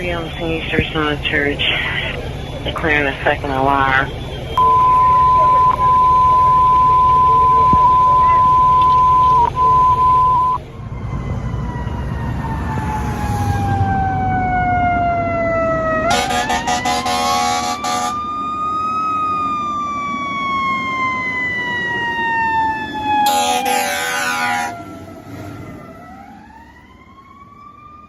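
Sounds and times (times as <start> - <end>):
fire truck siren wailing: 0.0 - 28.0
air horn blasts: 16.0 - 18.2, 23.2 - 24.8.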